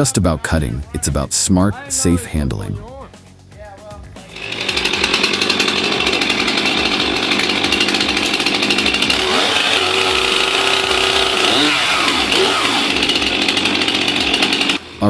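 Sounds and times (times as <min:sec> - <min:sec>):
chainsaw running at high revs: 0:04.2 - 0:15.0.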